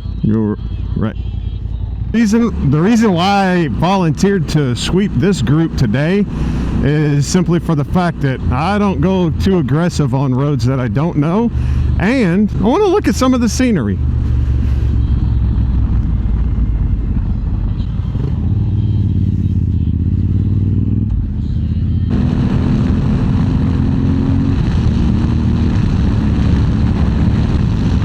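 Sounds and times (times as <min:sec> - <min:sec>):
motorcycle engine running: 0:00.0 - 0:28.0
rushing wind noise: 0:14.0 - 0:20.2, 0:22.1 - 0:28.0.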